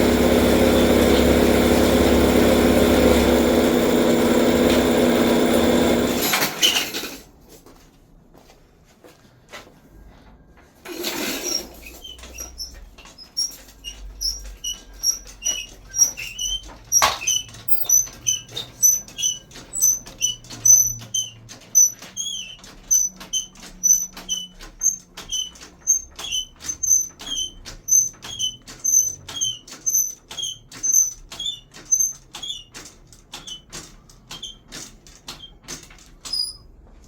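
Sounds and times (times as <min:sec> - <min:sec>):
short high-pitched squeaks: 0:10.9 - 0:32.8, 0:36.3 - 0:36.7.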